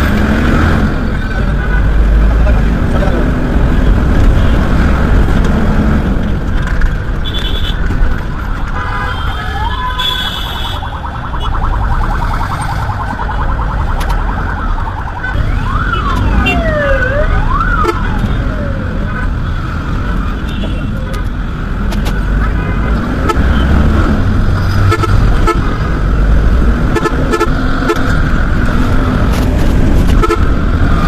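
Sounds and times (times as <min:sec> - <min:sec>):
road traffic rumble: 0:00.0 - 0:31.0
emergency siren wailing: 0:09.2 - 0:19.5.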